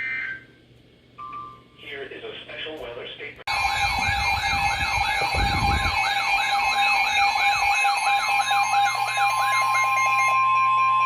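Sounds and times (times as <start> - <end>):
electronic emergency alert tone: 3.5 - 11.0.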